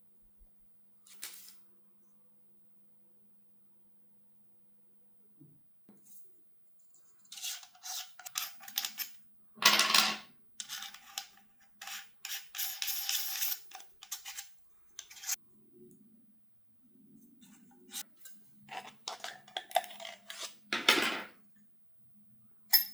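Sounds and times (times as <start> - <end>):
packaging rustling and scraping: 7.2 - 9.1, 10.6 - 15.4, 18.7 - 20.6.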